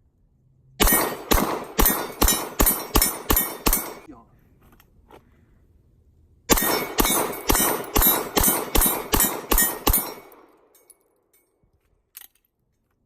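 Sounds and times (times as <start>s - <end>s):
pistol shots with ringing tail: 0.8s - 4.1s, 6.5s - 10.9s.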